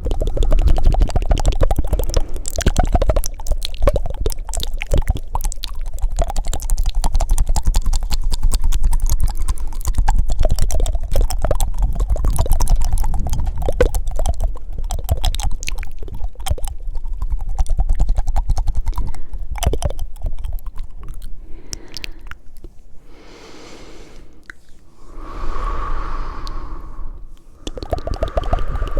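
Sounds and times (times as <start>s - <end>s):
wet tongue clicks and flutters: 0.0s - 23.4s, 24.3s - 28.9s
low rumble of air on mic: 22.9s - 28.9s.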